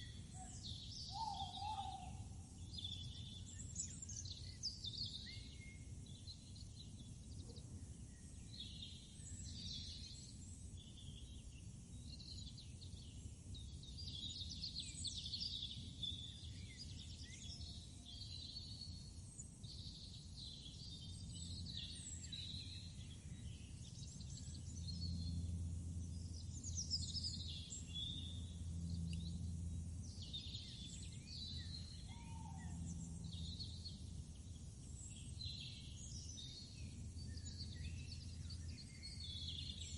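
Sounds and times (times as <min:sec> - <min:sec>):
low outdoor rumble: 0:00.0 - 0:39.9
small birds chirping: 0:00.0 - 0:39.9
low hum: 0:19.9 - 0:39.9.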